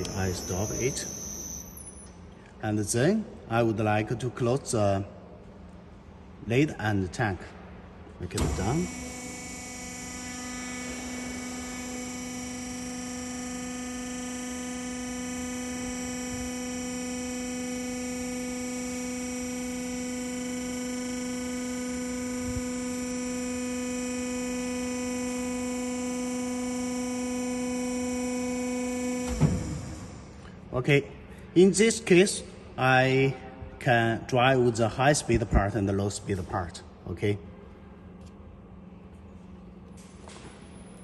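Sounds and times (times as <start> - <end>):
electric pump hum: 0.0 - 2.3, 7.6 - 31.5.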